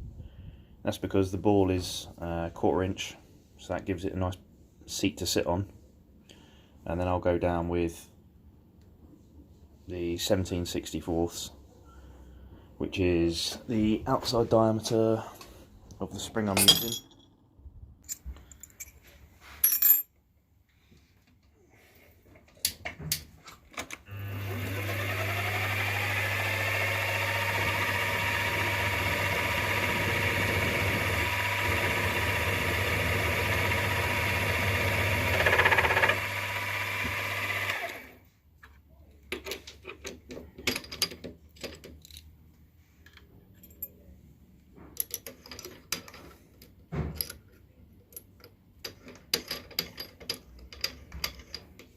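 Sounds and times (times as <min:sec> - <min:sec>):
milling machine motor whining: 0:24.1 - 0:38.1
tools clicking and tapping: 0:45.0 - 0:51.9.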